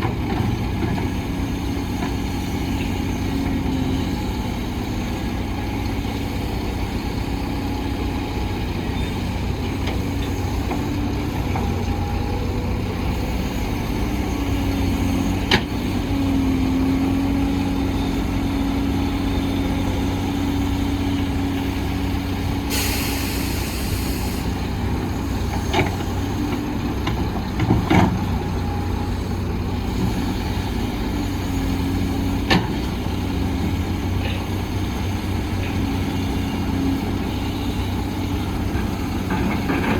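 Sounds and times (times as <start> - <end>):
diesel machinery running: 0.0 - 39.9
air brake hiss: 22.7 - 24.6.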